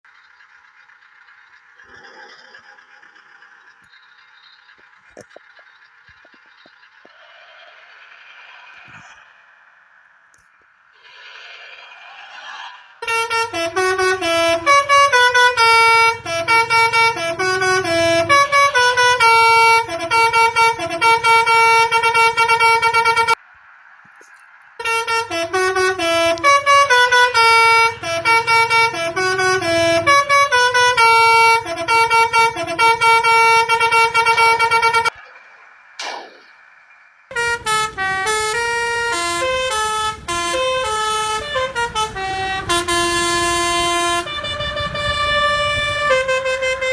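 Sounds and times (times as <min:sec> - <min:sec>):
multi-tone truck air horn tune: 0:12.4 - 0:23.4, 0:24.8 - 0:35.2, 0:37.3 - 0:46.9.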